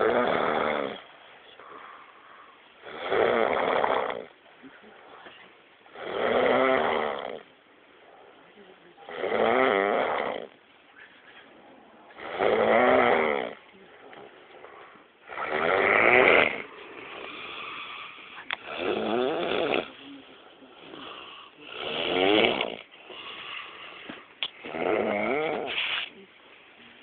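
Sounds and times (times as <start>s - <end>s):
loud rattling snores: 0.0s - 1.1s, 2.8s - 4.3s, 5.9s - 7.5s, 9.1s - 10.6s, 12.2s - 13.6s, 15.3s - 20.0s, 20.8s - 23.6s, 24.6s - 26.1s
soft breathing: 1.0s - 2.8s, 10.7s - 12.2s, 13.6s - 15.6s, 16.5s - 19.0s, 19.6s - 22.0s, 22.8s - 24.7s.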